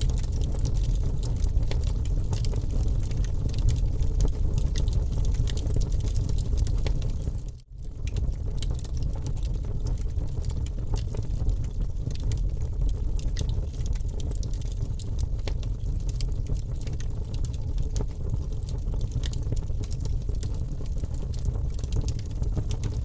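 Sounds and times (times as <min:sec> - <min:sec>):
steady low rumble: 0:00.0 - 0:04.4
raindrops dripping: 0:00.0 - 0:23.0.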